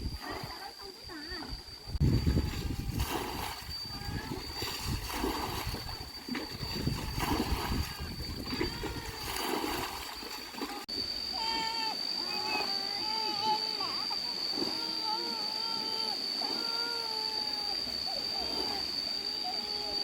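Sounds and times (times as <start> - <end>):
water splashing in strokes: 2.0 - 10.9.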